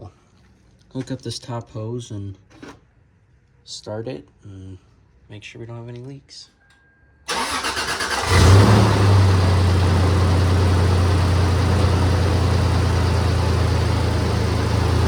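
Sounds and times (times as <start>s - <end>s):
car engine starting and idling: 7.3s - 15.0s.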